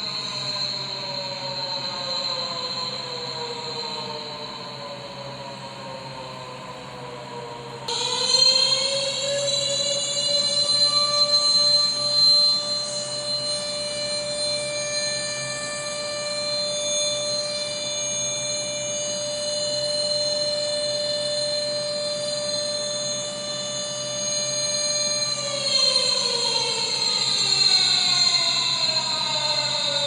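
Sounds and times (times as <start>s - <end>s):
tornado siren: 0.0s - 30.0s.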